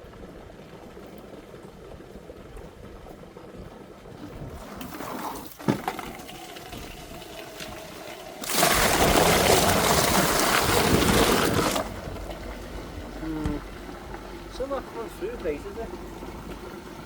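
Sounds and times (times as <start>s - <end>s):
water spraying hard from hose: 4.5s - 12.3s.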